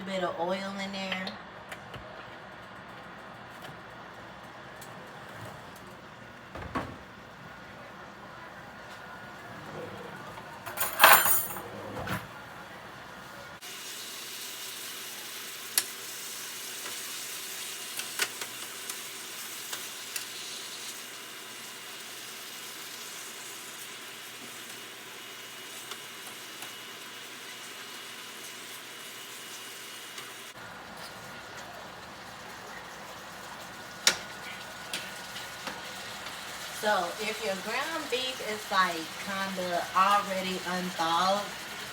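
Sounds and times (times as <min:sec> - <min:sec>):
meat sizzling in a pan: 0:13.6 - 0:41.9.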